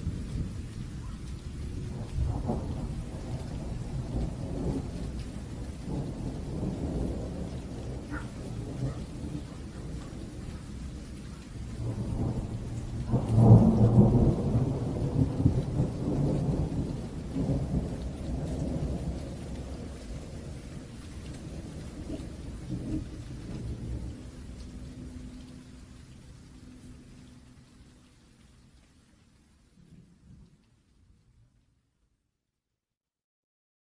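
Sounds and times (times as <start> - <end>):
thunder rolling: 0.0 - 27.1
steady rain falling: 0.0 - 32.4.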